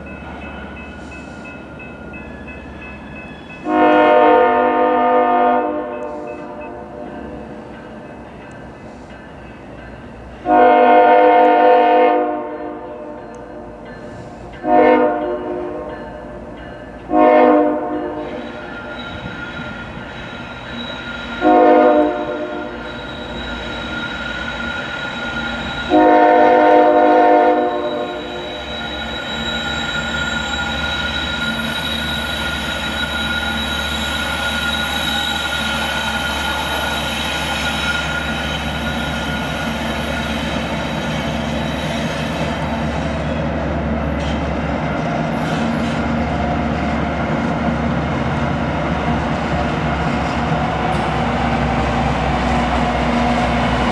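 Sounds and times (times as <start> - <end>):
train rumbling: 0.0 - 53.9
locomotive air horn blasts: 3.6 - 6.6, 10.4 - 12.6, 14.6 - 15.8, 17.1 - 18.4, 21.4 - 33.3
wheel squeal: 18.2 - 26.2, 27.6 - 43.2.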